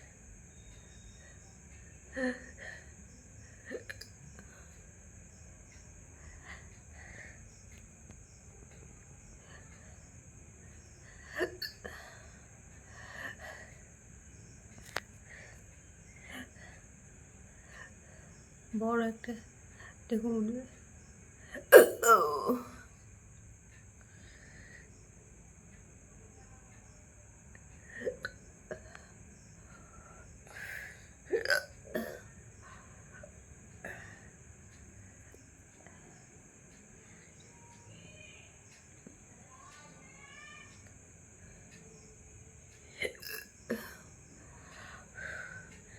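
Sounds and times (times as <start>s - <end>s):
person hiccuping: 21.7s - 22.7s, 31.4s - 32.2s, 43.0s - 44.0s.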